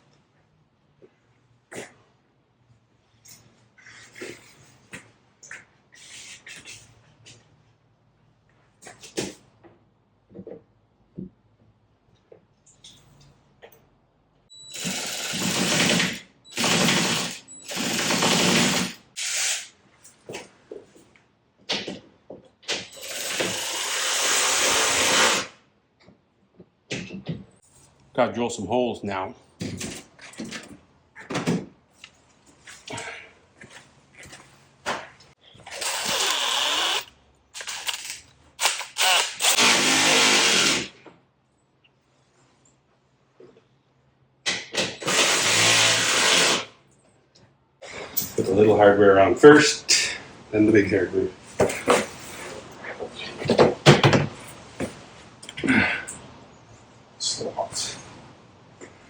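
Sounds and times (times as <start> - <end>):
handheld power tool running: 14.7 - 19.7, 23.0 - 25.6, 35.6 - 40.9, 45.0 - 46.7.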